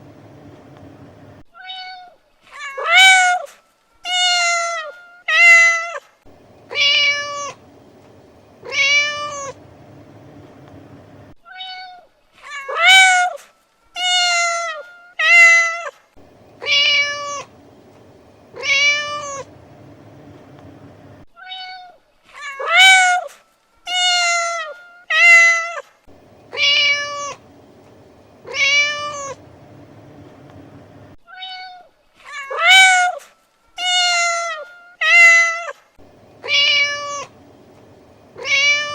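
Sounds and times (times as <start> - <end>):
cat meowing: 6.7 - 7.6, 8.6 - 9.6, 11.5 - 13.4, 16.6 - 17.5, 18.6 - 19.5, 21.4 - 23.3, 26.5 - 27.4, 28.4 - 29.4, 31.3 - 33.2, 36.4 - 37.4, 38.4 - 38.9.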